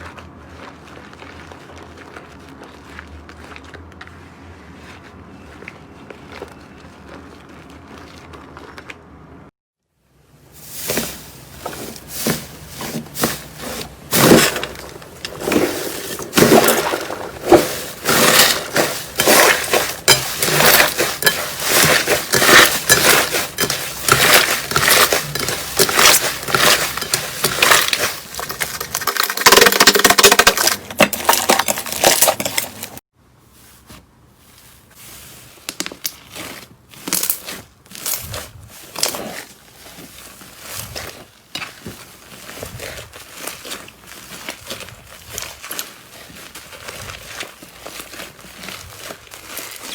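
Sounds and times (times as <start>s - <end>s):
slime crackling and popping: 40.6s - 49.9s.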